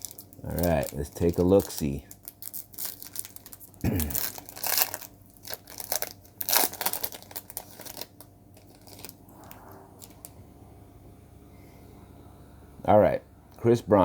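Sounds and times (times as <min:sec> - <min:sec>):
card pack wrapper tearing: 0:00.0 - 0:10.3.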